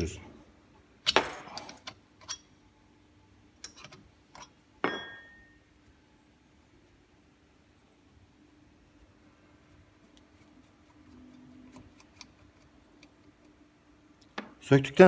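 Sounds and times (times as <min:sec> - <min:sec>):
metal tool clinking on caliper: 0:01.1 - 0:02.5, 0:03.6 - 0:05.6.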